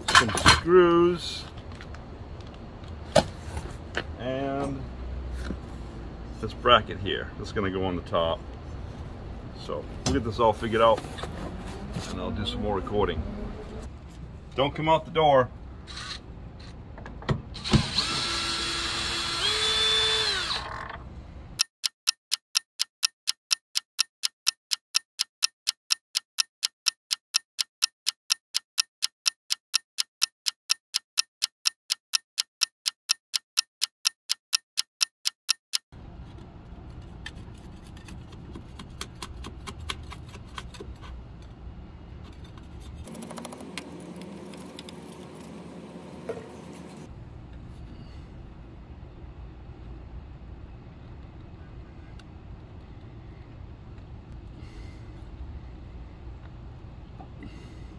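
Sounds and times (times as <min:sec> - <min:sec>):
power tool motor whirring: 0:17.6 - 0:20.7
clock ticking: 0:21.6 - 0:35.9
small clicks: 0:21.6 - 0:35.9.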